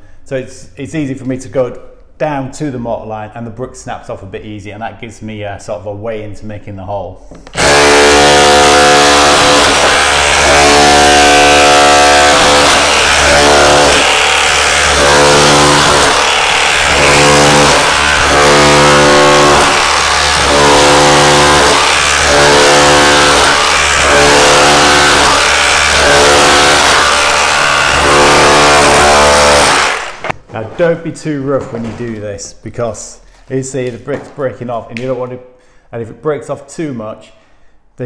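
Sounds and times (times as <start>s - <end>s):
rotary hammer chiselling brick: 7.5s - 30.4s.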